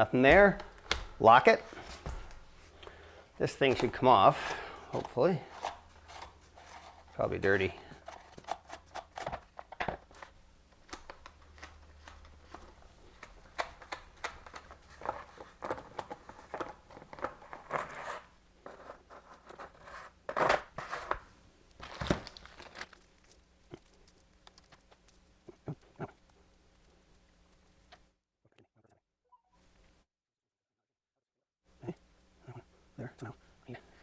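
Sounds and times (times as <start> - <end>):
clicks scrapes and rattles: 5.0 - 10.3.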